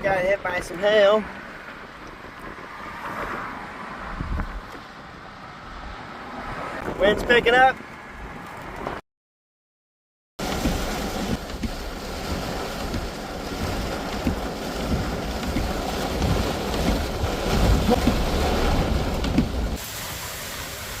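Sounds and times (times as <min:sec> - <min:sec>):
wind gusting on microphone: 0:00.9 - 0:09.0, 0:10.4 - 0:19.8
hiss of wind-driven rain: 0:10.4 - 0:21.0.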